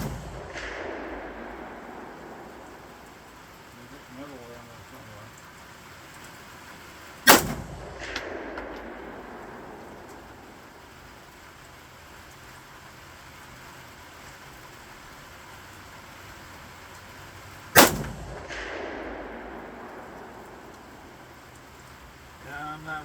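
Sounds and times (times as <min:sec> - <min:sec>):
rifle shot: 0:00.0 - 0:04.3, 0:07.2 - 0:11.3, 0:17.8 - 0:22.1
gunshot echo rolling away: 0:00.0 - 0:05.3, 0:06.2 - 0:11.6, 0:17.8 - 0:23.0.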